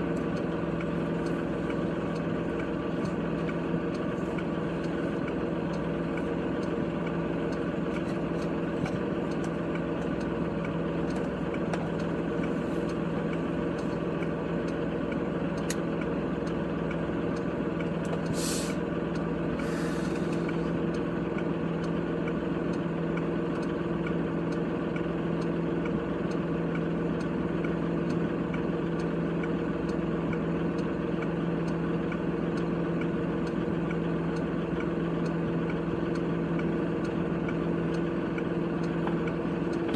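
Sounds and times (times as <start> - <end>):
tractor diesel engine humming: 0.0 - 39.9
brief hisses: 18.3 - 18.8.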